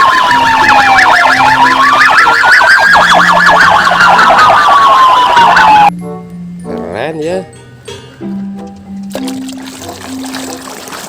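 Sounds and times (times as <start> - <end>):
police siren wailing and warbling: 0.0 - 5.9.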